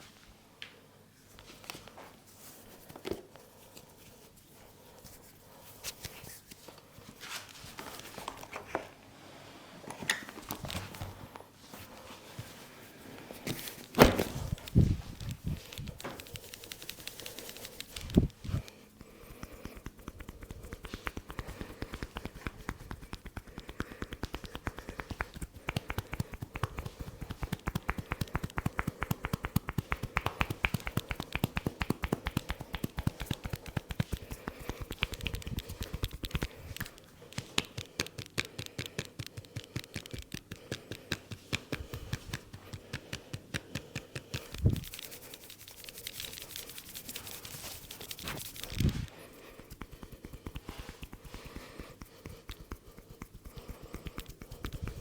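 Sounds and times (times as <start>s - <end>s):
heavier thump: 14.0s - 14.6s
hands tapping rhythmically: 14.0s - 55.0s.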